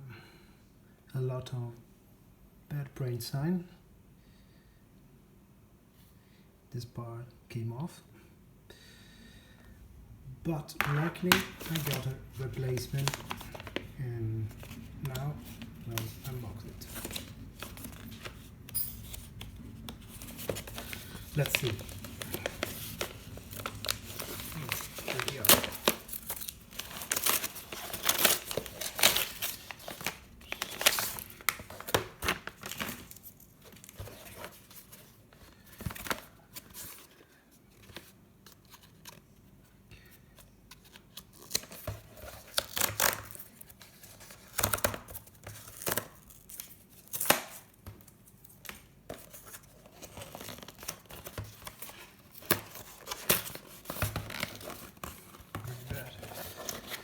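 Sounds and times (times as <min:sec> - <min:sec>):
paper and plastic tearing and crinkling: 0:10.8 - 0:37.2, 0:40.8 - 0:57.0.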